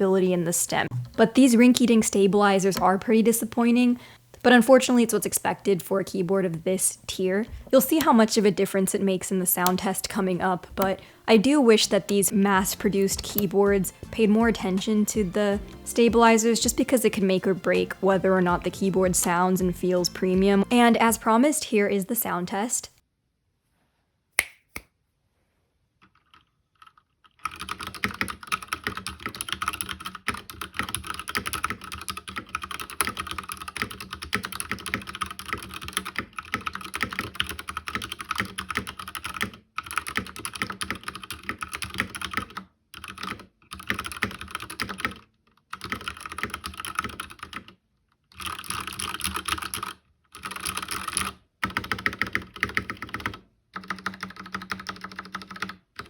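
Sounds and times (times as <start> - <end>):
fast typing on mechanical keyboard: 26.2 - 56.0.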